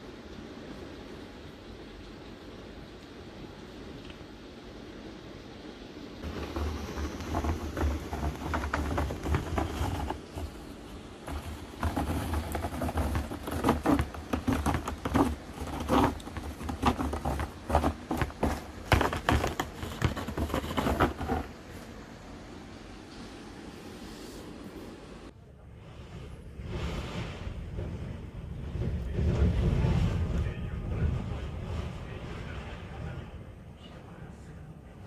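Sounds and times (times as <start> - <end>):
cat scratching a scratcher: 6.2 - 21.7.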